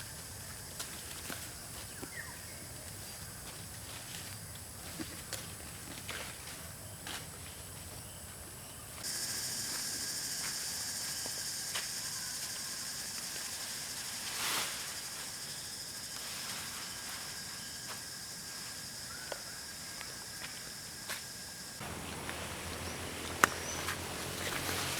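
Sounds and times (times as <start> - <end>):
high-pitched insect drone: 9.0 - 24.6.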